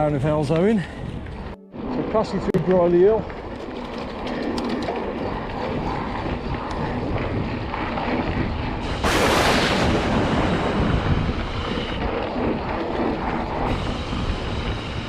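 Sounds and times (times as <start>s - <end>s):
bike tyre rumble: 0.0s - 15.0s
wind buffeting microphone: 0.0s - 15.0s
loud rush of noise: 8.8s - 15.0s.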